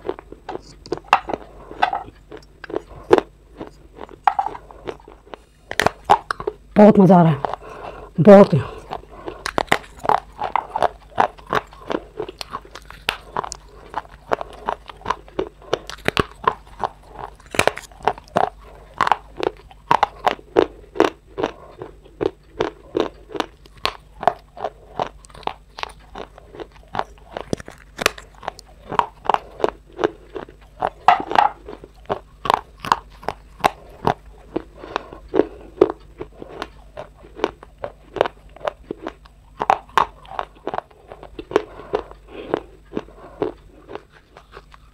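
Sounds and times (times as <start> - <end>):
person chewing crunchy food: 0.0 - 44.9.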